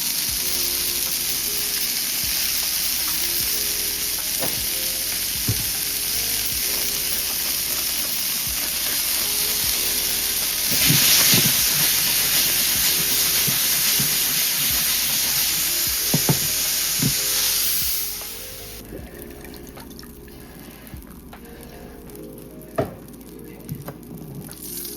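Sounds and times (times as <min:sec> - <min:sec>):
fish sizzling in a pan: 0:00.0 - 0:18.8.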